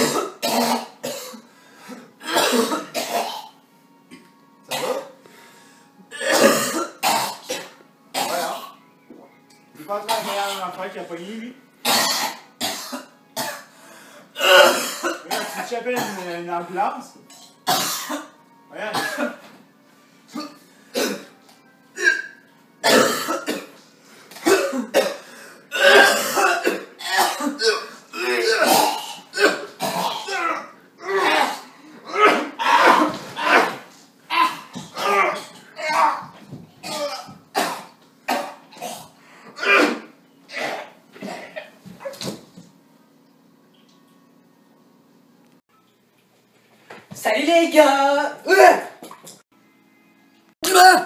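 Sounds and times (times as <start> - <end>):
man coughing: 2.2 - 3.4, 6.2 - 8.7, 10.1 - 10.7, 14.4 - 16.3, 18.9 - 19.5, 22.0 - 23.8, 24.4 - 33.8, 36.8 - 41.8, 50.6 - 51.0.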